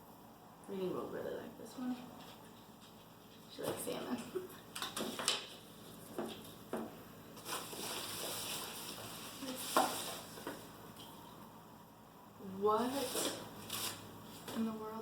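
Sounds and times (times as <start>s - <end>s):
plastic packaging crinkling: 7.4s - 10.5s, 12.9s - 14.6s.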